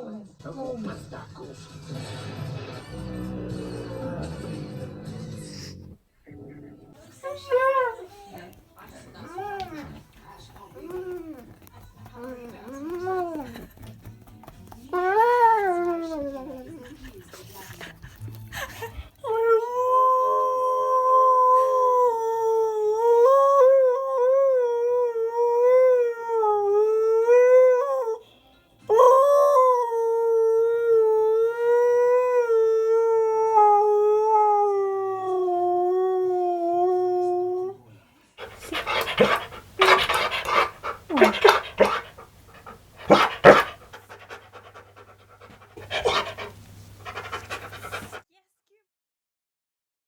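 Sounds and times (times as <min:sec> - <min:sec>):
dog howling: 0:09.2 - 0:10.1, 0:14.9 - 0:16.8, 0:38.4 - 0:48.2.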